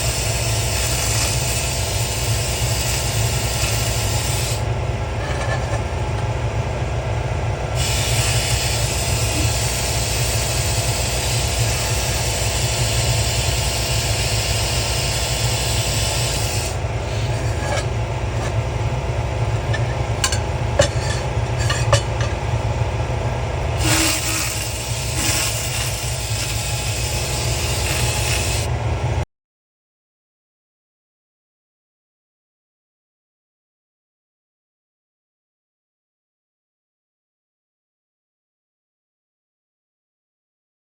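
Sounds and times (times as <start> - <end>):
laser hissing crackle: 0.0 - 4.6, 7.8 - 16.8, 23.7 - 28.7
low machine hum: 0.0 - 29.2.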